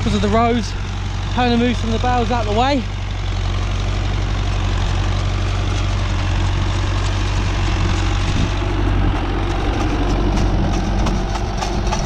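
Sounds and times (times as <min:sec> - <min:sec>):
tractor engine running: 0:00.0 - 0:12.0
mechanical clatter: 0:07.0 - 0:12.0.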